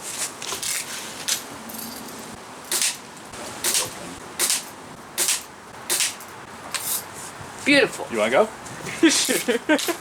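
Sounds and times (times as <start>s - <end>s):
air gun shots hissing: 2.7s - 3.0s, 3.6s - 7.0s.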